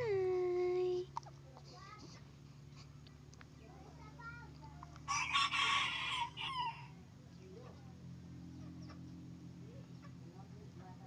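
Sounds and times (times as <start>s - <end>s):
rooster crowing: 5.1s - 7.0s.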